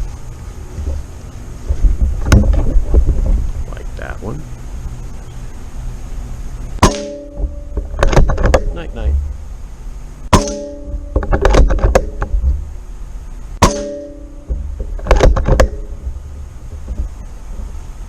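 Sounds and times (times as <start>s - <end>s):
air rifle shots: 6.8s - 8.8s, 10.3s - 12.3s, 13.6s - 15.9s
metallic clattering: 6.8s - 9.4s, 10.3s - 12.8s.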